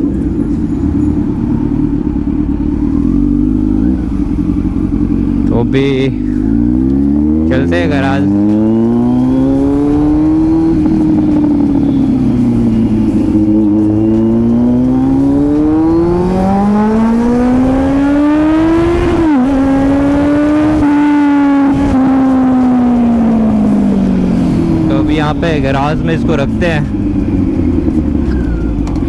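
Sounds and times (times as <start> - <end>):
motorcycle engine revving: 0.0 - 29.0.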